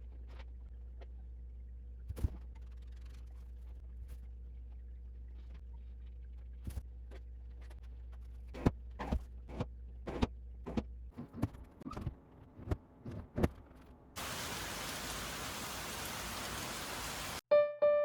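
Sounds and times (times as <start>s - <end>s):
loud steady hiss: 14.2s - 17.4s.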